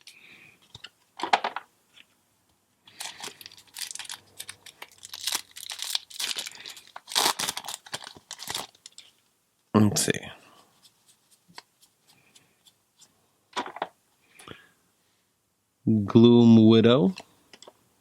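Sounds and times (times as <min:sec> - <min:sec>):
foil wrapper crinkling and tearing: 0:02.9 - 0:09.1.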